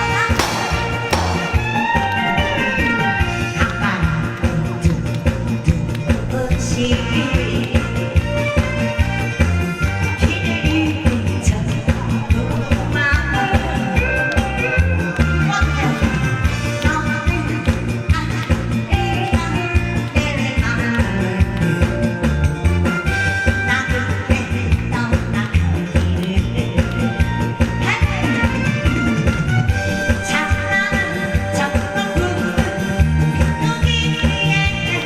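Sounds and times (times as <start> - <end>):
upbeat music: 0.0 - 35.0
person singing: 10.0 - 22.5, 23.2 - 28.6.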